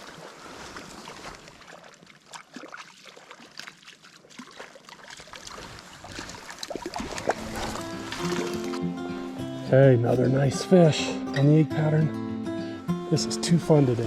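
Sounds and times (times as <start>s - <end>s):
light splashes and clicks: 0.0s - 8.8s
mountain stream running: 0.0s - 12.0s.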